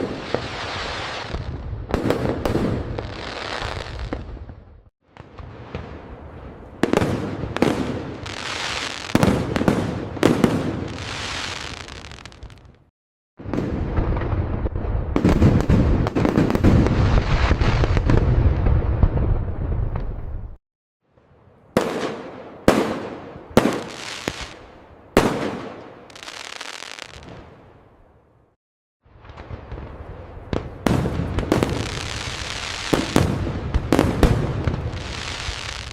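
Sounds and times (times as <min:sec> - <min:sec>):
firework bangs: 0:06.8 - 0:12.7, 0:13.4 - 0:20.5, 0:21.8 - 0:27.6, 0:29.1 - 0:35.9
firework crackle: 0:06.9 - 0:12.9, 0:13.6 - 0:20.4, 0:23.6 - 0:24.6, 0:25.2 - 0:27.4, 0:29.1 - 0:35.9
crackling hiss: 0:26.1 - 0:27.3, 0:34.7 - 0:35.9
firework crackling tail: 0:29.1 - 0:35.9.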